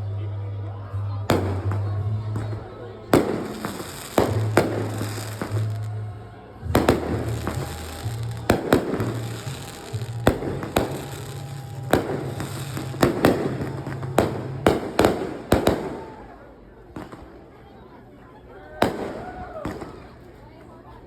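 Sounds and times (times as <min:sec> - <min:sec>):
low music notes: 0:00.0 - 0:15.7
fireworks bangs: 0:01.3 - 0:06.0, 0:06.7 - 0:17.5, 0:18.8 - 0:20.4
fireworks crackling: 0:01.3 - 0:06.0, 0:06.7 - 0:17.6, 0:18.8 - 0:20.6.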